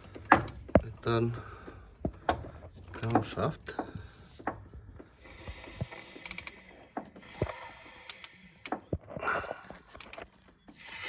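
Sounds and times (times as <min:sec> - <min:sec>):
wrench clicking on crankshaft bolt: 0:06.2 - 0:06.6.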